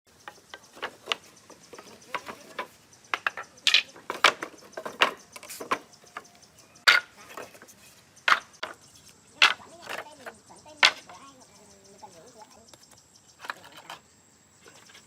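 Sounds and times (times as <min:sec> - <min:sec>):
taps and knocks on wood: 0:00.2 - 0:06.3.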